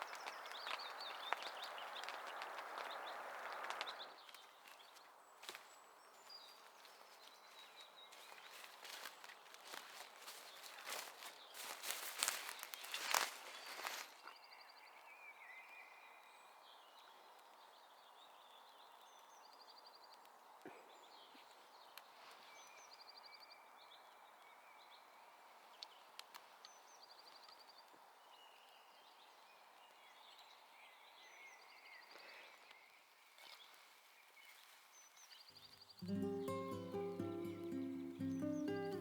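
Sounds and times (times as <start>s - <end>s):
bird chirps: 35.8s - 39.0s.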